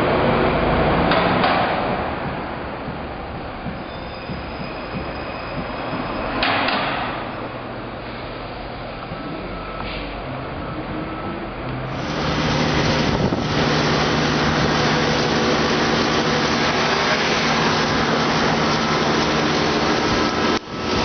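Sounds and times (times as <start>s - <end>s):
loud vehicle roar: 0.0s - 3.7s, 6.4s - 21.0s.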